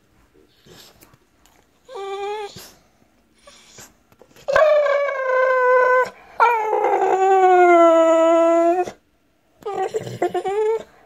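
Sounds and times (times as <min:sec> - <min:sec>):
dog howling: 0:04.5 - 0:09.0, 0:09.6 - 0:10.9.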